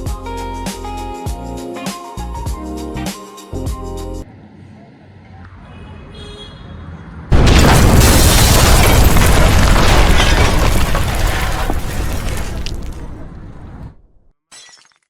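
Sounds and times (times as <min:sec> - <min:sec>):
explosion boom and rumbling blast: 0:07.3 - 0:14.1.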